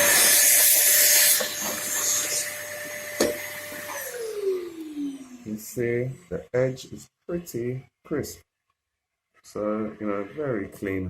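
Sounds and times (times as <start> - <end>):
vacuum cleaner running: 0.0 - 5.8.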